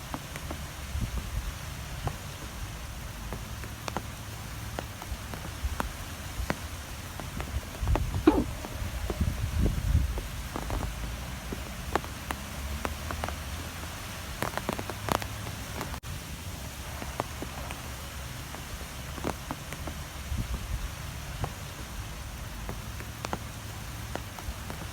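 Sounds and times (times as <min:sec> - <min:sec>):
light ticks and taps: 0:02.0 - 0:08.4, 0:10.2 - 0:13.6, 0:14.4 - 0:16.0, 0:18.5 - 0:20.6, 0:21.3 - 0:24.9
strong wind gusts: 0:07.4 - 0:10.9.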